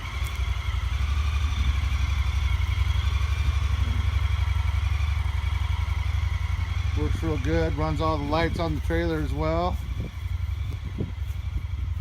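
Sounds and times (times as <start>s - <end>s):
engine idling: 0.0s - 12.0s.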